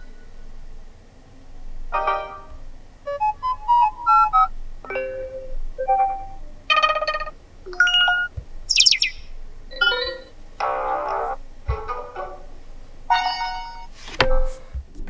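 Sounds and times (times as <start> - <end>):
high chirps: 1.8 - 14.7
short melodic ringtones: 2.0 - 14.7.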